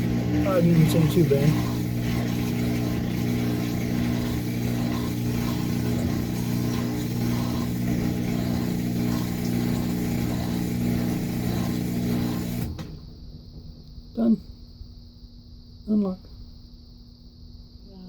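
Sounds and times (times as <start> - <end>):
washing machine spinning: 0.0 - 13.2.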